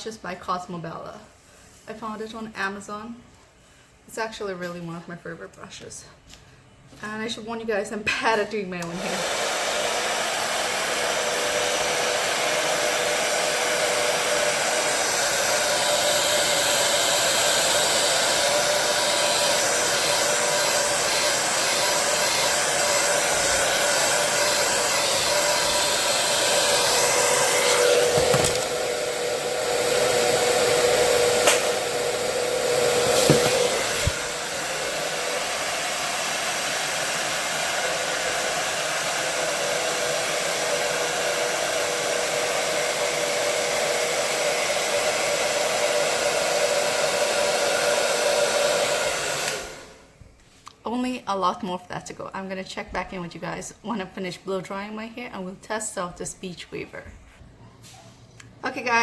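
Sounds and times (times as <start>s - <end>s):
hair dryer clicks: 8.8s - 9.4s, 17.6s - 29.2s, 29.9s - 34.5s, 49.2s - 49.7s
hair dryer blowing: 8.8s - 50.2s.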